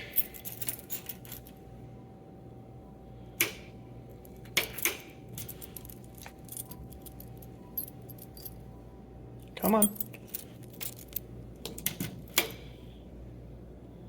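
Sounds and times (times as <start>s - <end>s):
keys jangling: 0.0s - 1.6s, 4.2s - 8.6s, 9.5s - 12.5s
faint steady hum: 0.0s - 14.0s.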